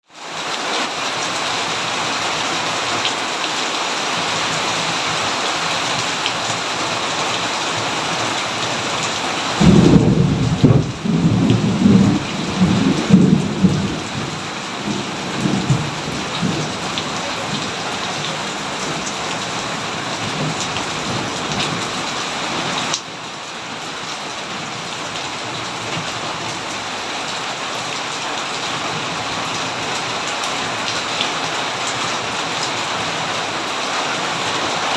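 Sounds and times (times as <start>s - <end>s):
steady rain falling: 0.0s - 34.9s
thunder rumbling: 9.4s - 22.9s.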